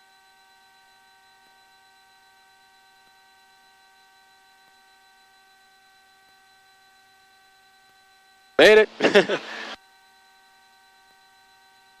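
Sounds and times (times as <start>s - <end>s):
electrical hum and hiss: 8.6s - 9.8s.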